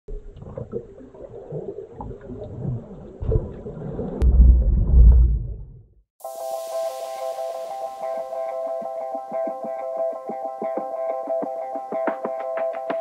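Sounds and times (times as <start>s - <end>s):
water noise: 0.1s - 8.7s.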